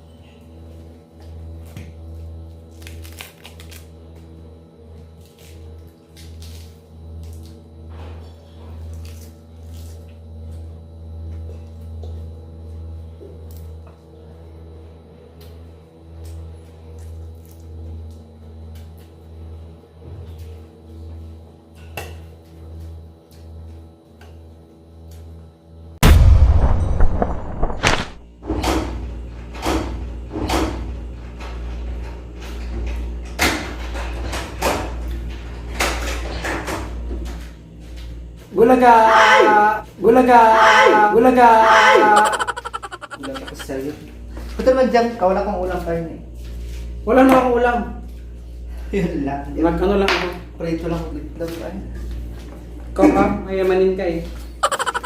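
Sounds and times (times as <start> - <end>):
crunching of raw vegetables: 2.7 - 3.8.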